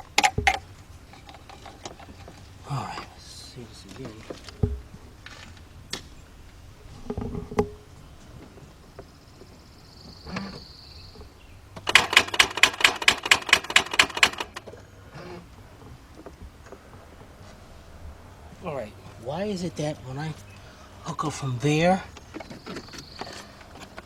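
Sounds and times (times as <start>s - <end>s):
starter solenoid clicking rapidly: 11.8s - 14.7s.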